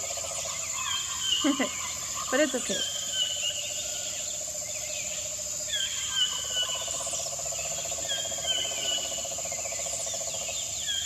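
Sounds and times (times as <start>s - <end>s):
high insect drone: 0.0s - 11.0s.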